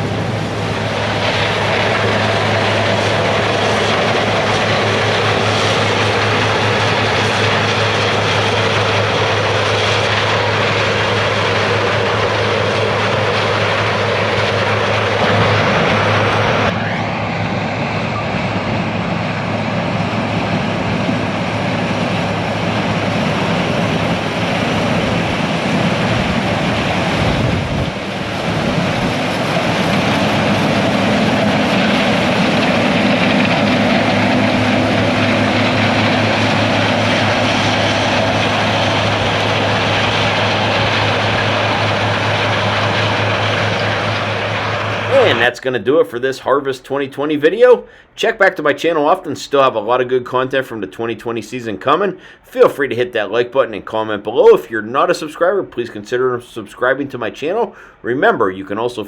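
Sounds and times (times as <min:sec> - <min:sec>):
low hum: 0:00.0 - 0:45.6
diesel engine drone: 0:00.0 - 0:46.0, 0:52.1 - 0:53.1.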